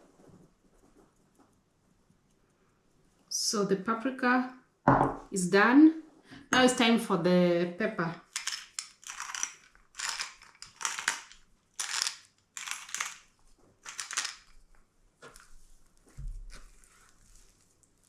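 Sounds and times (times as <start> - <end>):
pepper grinder grinding: 8.2 - 14.5.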